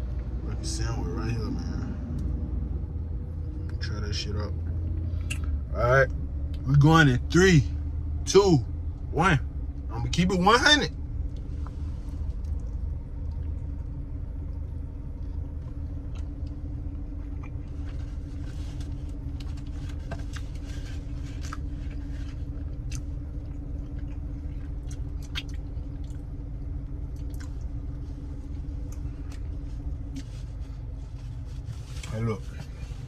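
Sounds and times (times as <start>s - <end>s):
man chewing crunchy food: 14.5s - 29.4s.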